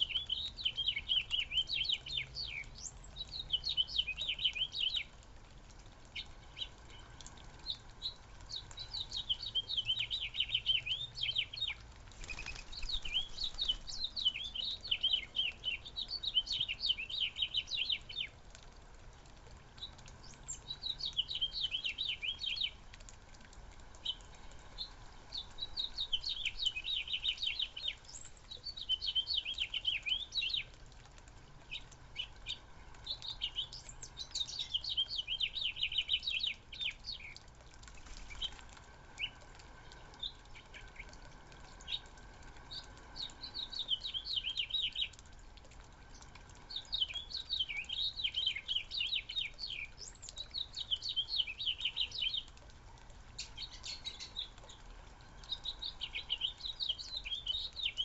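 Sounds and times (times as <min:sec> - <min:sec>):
small birds chirping: 0:00.0 - 0:58.0.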